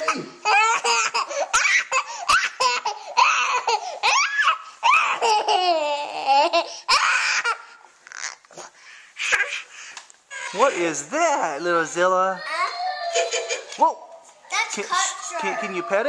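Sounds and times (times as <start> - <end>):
small child laughing and squealing: 0.0 - 8.4, 10.3 - 10.9, 12.4 - 13.8.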